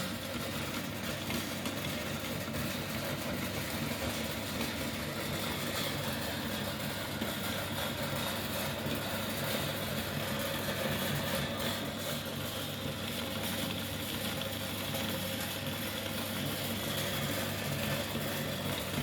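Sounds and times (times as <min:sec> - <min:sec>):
electric meat grinder grinding: 0:00.0 - 0:19.0.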